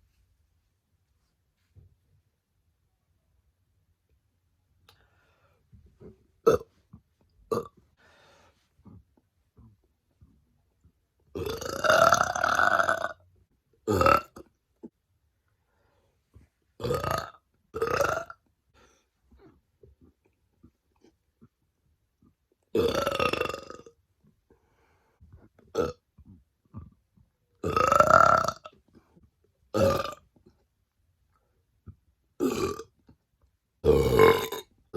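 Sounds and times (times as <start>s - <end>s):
woman belching: 11.4s - 13.1s, 22.8s - 23.9s, 29.8s - 30.2s, 32.4s - 32.9s, 33.8s - 34.7s.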